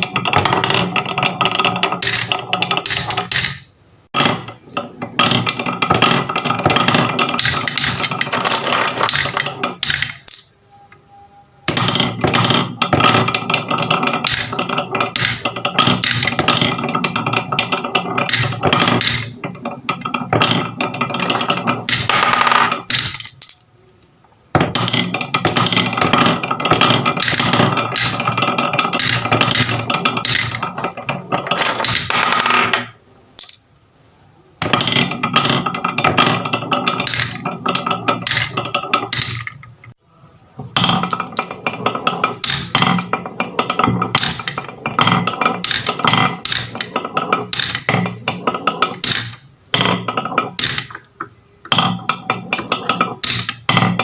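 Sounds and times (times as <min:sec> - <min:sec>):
marbles rattling down wooden run: 0:00.0 - 0:10.5, 0:11.8 - 0:23.6, 0:34.6 - 0:39.4, 0:40.8 - 0:51.0.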